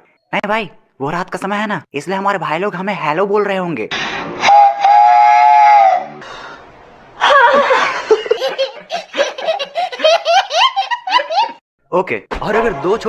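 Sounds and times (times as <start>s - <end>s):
train horn blast: 4.4s - 6.2s
person laughing: 7.2s - 11.6s.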